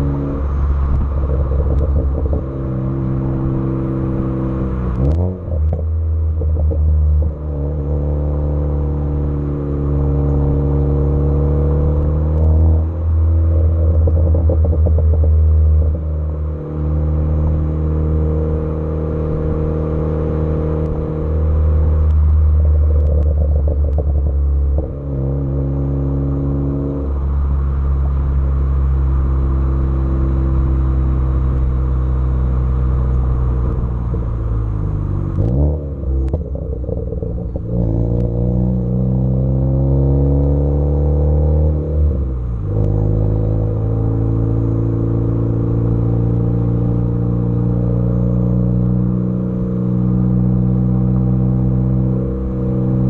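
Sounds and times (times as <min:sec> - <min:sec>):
car engine and exhaust running: 0:00.0 - 0:53.0.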